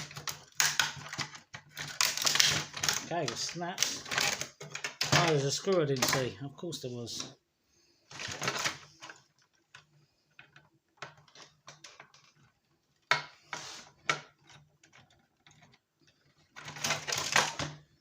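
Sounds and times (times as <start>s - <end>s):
plastic casing clicking: 0.0s - 6.2s
scrapes and knocks: 8.1s - 17.7s.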